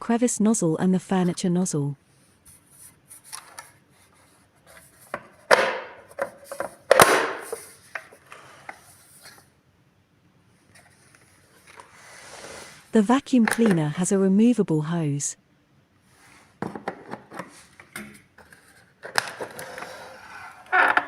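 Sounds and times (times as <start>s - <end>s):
loud plastic clacks: 5.2s - 7.6s.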